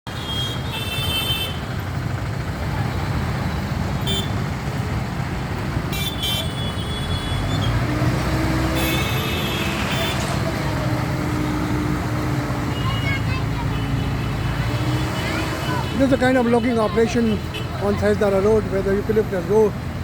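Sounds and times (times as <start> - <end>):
road traffic: 0.0 - 20.0
vehicle horns tooting: 0.1 - 1.8, 4.0 - 4.5, 5.9 - 7.8, 8.4 - 10.8, 12.6 - 18.0.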